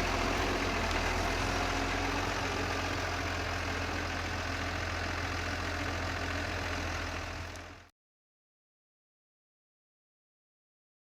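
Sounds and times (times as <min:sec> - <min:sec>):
tractor diesel engine running: 0:00.0 - 0:07.9.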